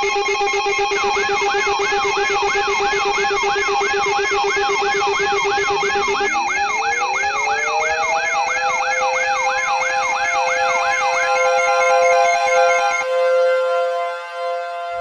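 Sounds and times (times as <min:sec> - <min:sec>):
wailing electronic siren: 0:00.0 - 0:15.0
rising siren tone: 0:05.2 - 0:13.5.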